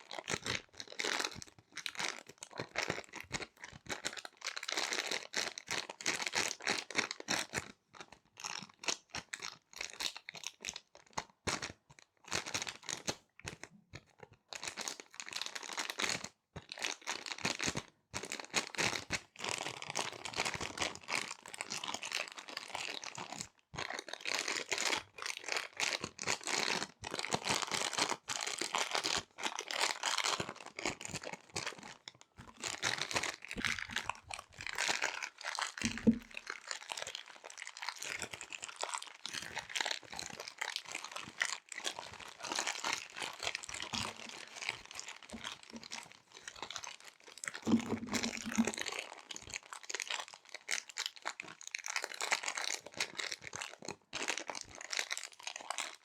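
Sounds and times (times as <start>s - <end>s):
plastic bags crinkling: 29.8s - 51.4s.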